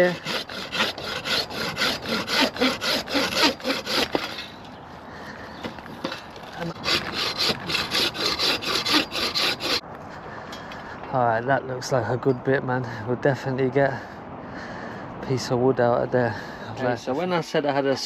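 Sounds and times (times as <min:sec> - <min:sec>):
hand saw cutting branch: 0:00.0 - 0:04.6, 0:06.0 - 0:09.8.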